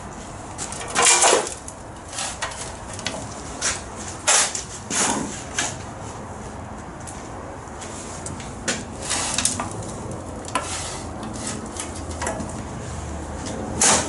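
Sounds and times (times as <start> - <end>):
shovel scraping into dirt: 3.6 - 5.8, 9.0 - 9.5, 13.6 - 14.0.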